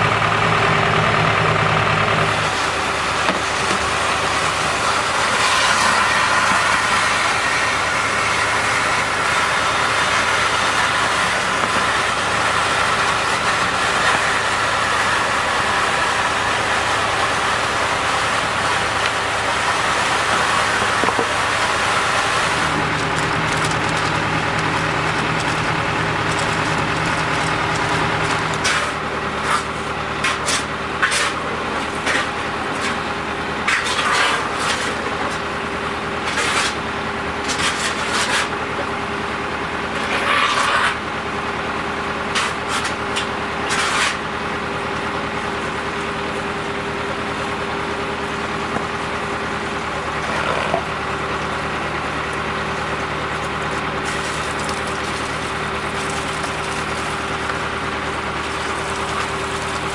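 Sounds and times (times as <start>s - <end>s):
vacuum truck engine humming: 0.0s - 40.4s, 41.0s - 59.9s.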